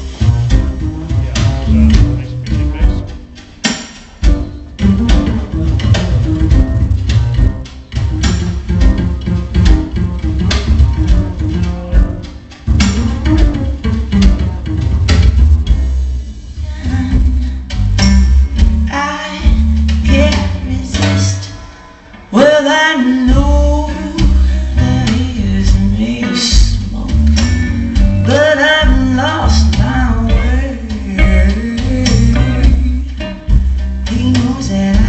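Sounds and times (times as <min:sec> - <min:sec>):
heavy bass line: 0:00.0 - 0:21.7, 0:23.2 - 0:35.0
guitar: 0:00.0 - 0:35.0
man singing: 0:01.1 - 0:03.2, 0:22.4 - 0:27.5, 0:34.1 - 0:35.0.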